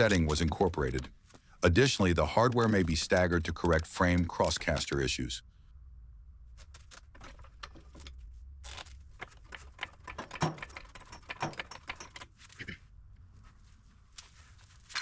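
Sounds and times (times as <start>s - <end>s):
hand tools clicking and clinking: 1.9s - 5.2s, 7.2s - 12.7s
ringing metal knocks: 10.1s - 12.2s.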